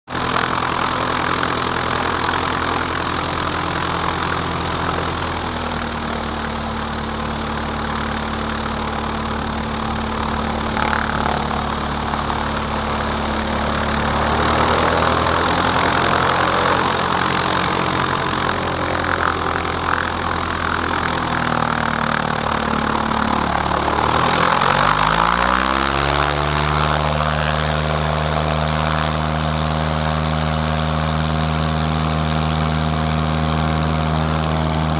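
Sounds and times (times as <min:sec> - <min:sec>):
propeller plane engine running: 0:00.0 - 0:34.9.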